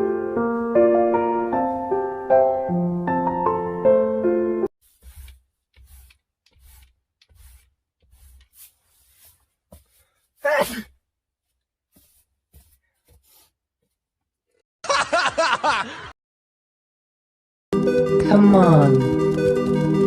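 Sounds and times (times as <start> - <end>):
person sneezing: 10.4 - 11.0.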